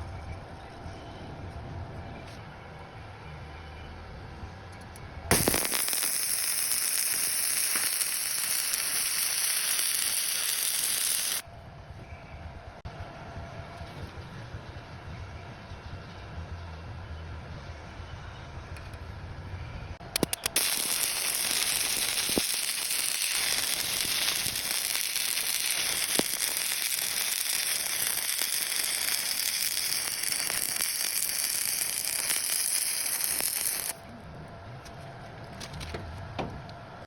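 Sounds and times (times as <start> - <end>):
electrode striking: 5.3 - 11.4
welding arc crackling and hissing: 5.3 - 11.4, 20.1 - 34.0.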